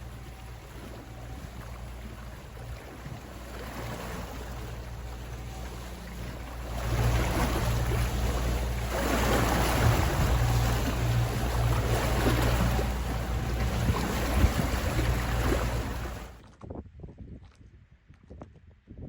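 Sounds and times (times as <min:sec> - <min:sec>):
steady low drone: 0:00.0 - 0:16.4
water rushing along a hull: 0:00.0 - 0:16.5
wind on microphone: 0:00.0 - 0:19.0.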